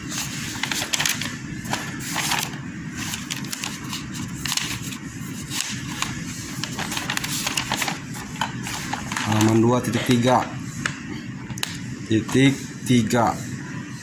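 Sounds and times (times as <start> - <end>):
low background hum: 0.0 - 14.0
paper pages flipping: 0.1 - 9.8.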